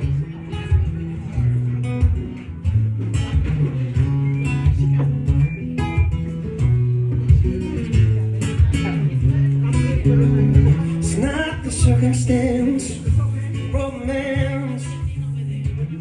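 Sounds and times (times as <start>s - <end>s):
guitar plucking: 0.0s - 16.0s.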